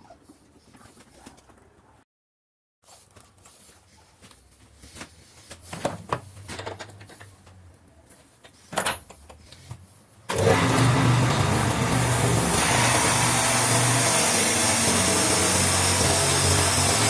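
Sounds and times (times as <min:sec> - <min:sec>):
wood lathe running: 0:10.3 - 0:17.0.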